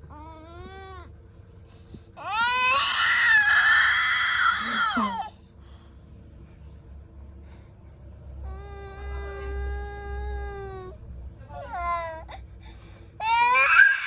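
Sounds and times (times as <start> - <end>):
baby crying: 2.2 - 5.3, 13.2 - 14.0.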